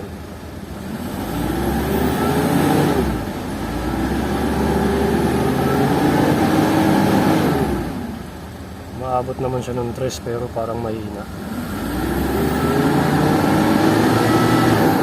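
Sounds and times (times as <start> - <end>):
engine revving: 0.7 - 8.3, 11.3 - 15.0.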